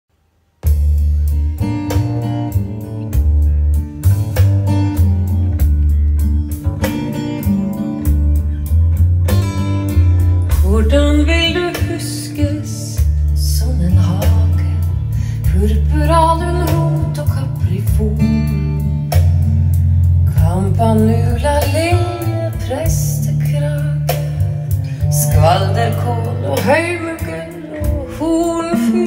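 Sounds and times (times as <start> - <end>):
deep bass notes: 0.6 - 29.0
plucked guitar: 0.6 - 29.0
person singing: 10.5 - 18.8, 20.3 - 29.0.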